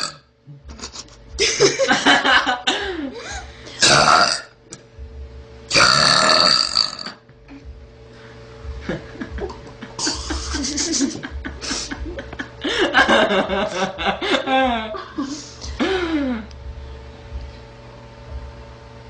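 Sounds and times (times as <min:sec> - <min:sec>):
girl burping loudly: 0:00.0 - 0:00.2, 0:03.8 - 0:04.6, 0:05.7 - 0:07.2.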